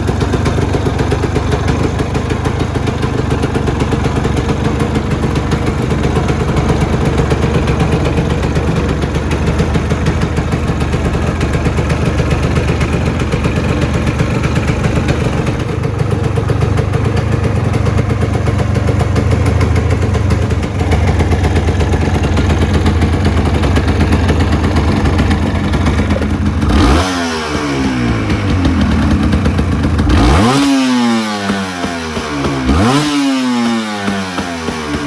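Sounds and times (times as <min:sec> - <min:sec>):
motorcycle engine idling: 0:00.0 - 0:35.0
engine revving: 0:19.0 - 0:35.0.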